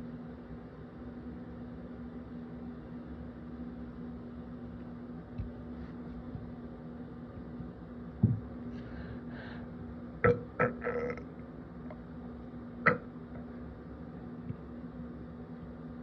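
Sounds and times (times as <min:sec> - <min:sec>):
person burping: 0:10.2 - 0:11.2, 0:12.9 - 0:13.1.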